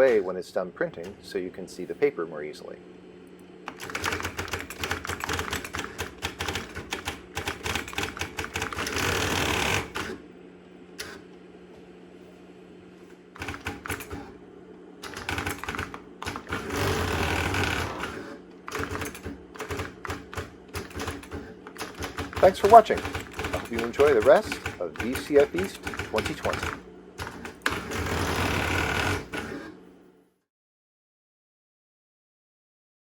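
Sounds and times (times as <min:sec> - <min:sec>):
printer carriage return whirr: 0:00.0 - 0:30.3
impact printer clattering: 0:03.7 - 0:10.1, 0:15.0 - 0:29.6.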